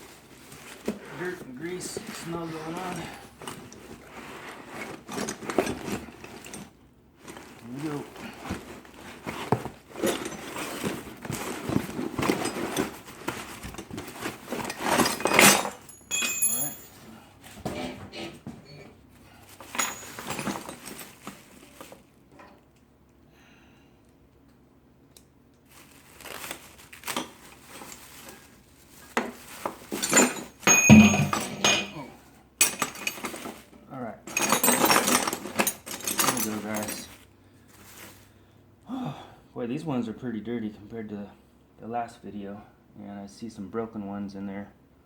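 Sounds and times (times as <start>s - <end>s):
packing rustling and crinkling: 0.0s - 15.4s, 19.2s - 22.2s, 25.6s - 30.6s, 34.5s - 38.5s
metal wrenches clinking: 14.6s - 17.1s, 19.6s - 20.9s, 29.9s - 33.6s, 34.3s - 37.2s.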